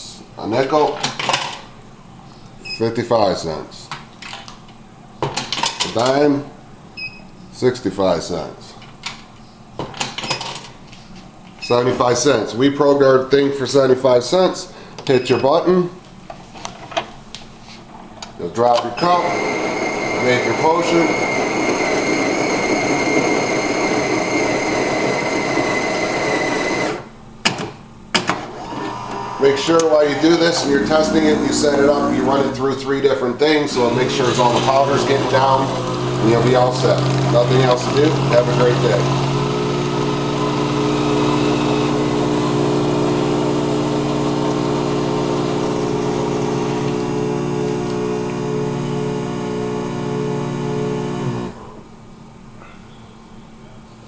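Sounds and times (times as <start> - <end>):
vending machine motor whining: 18.9 - 27.1, 28.4 - 51.8.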